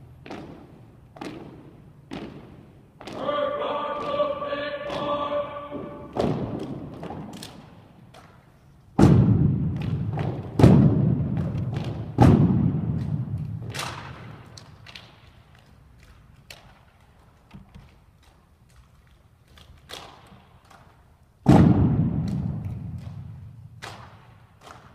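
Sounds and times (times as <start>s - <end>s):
echoing thuds on floor: 4.9s - 7.5s, 9.0s - 14.4s, 21.4s - 24.3s.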